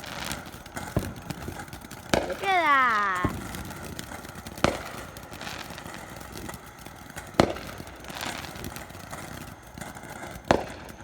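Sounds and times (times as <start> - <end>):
firework crackle: 0.0 - 11.0
firework bang: 2.1 - 5.7, 7.4 - 8.7.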